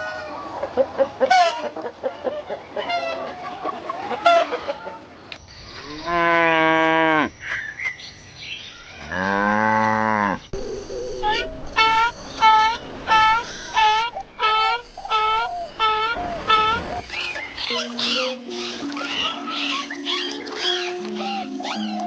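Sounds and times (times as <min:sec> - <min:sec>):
poultry calling: 0:09.0 - 0:22.0.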